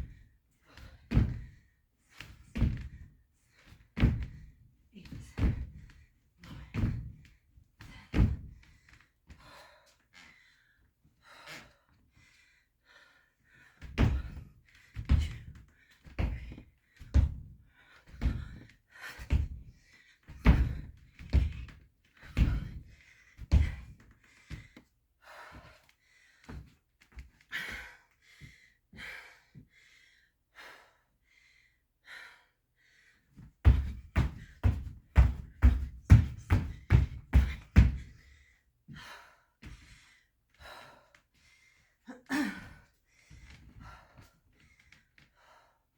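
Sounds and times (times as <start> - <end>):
feet landing on hard floor: 33.7 - 38.1.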